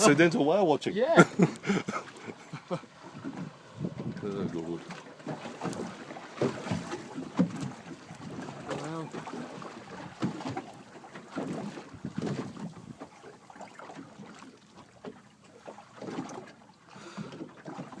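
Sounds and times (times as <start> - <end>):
water slapping against boat hull: 0.0 - 18.0
wind buffeting microphone: 3.0 - 4.9, 11.5 - 13.2.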